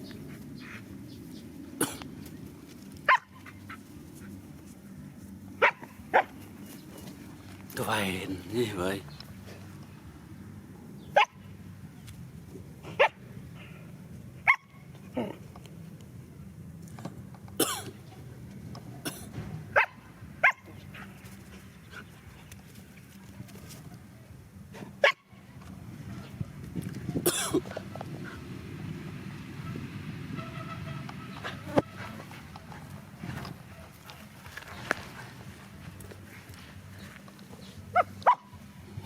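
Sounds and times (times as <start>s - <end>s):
dog barking: 3.1s - 3.6s, 5.6s - 6.4s, 11.2s - 11.4s, 13.0s - 13.2s, 14.4s - 14.8s, 19.8s - 20.8s, 25.0s - 25.3s, 37.9s - 38.6s.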